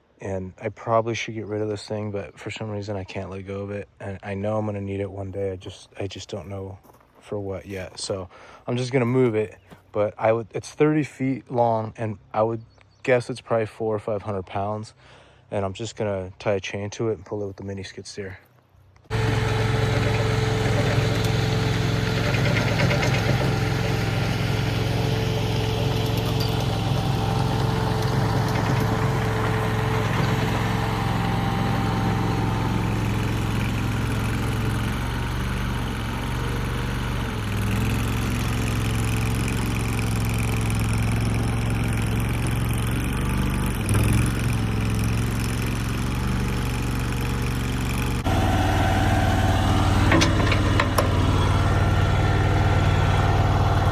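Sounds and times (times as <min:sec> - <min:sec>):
skid steer engine running: 0:19.0 - 0:53.9.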